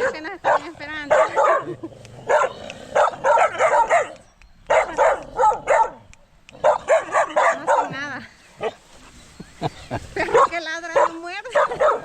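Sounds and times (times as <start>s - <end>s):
dogs barking: 0.0s - 6.0s, 6.6s - 8.0s, 10.2s - 12.0s.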